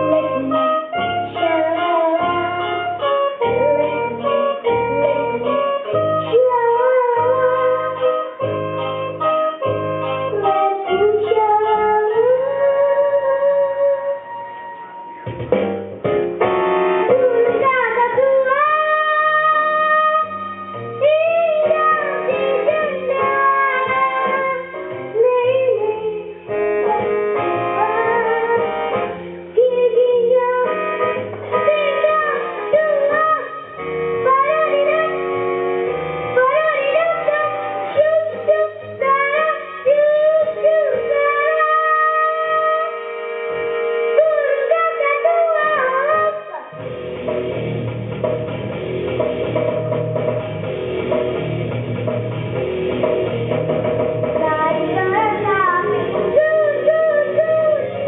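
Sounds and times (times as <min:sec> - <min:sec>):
child singing: 0:00.0 - 0:08.4, 0:10.3 - 0:14.3, 0:17.1 - 0:20.4, 0:21.0 - 0:27.1, 0:27.7 - 0:28.8, 0:29.6 - 0:35.3, 0:36.3 - 0:43.0, 0:44.1 - 0:46.7, 0:54.4 - 0:58.0
instrumental backing music: 0:00.0 - 0:58.0.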